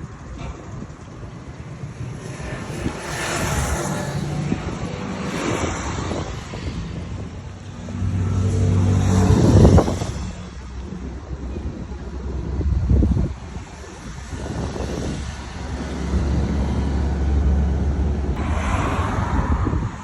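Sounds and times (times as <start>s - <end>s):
engine revving: 2.3s - 6.4s, 7.8s - 10.4s.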